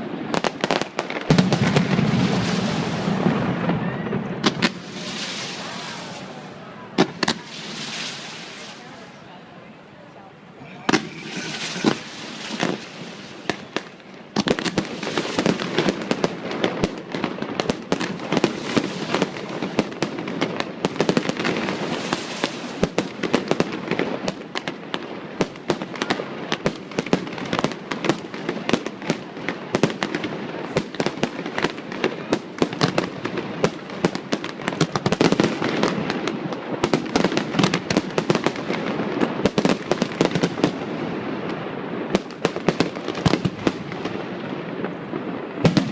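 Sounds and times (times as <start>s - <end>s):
fireworks bangs and crackling: 0.0s - 9.8s, 10.6s - 45.9s.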